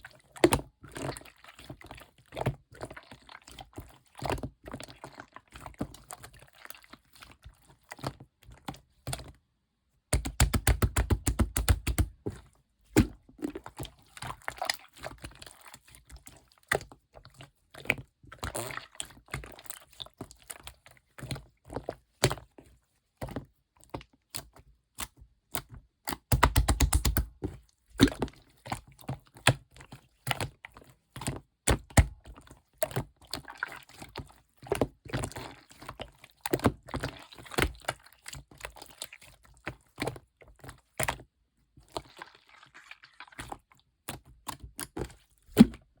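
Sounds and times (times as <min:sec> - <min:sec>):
slime squished by hand: 0:41.8 - 0:46.0.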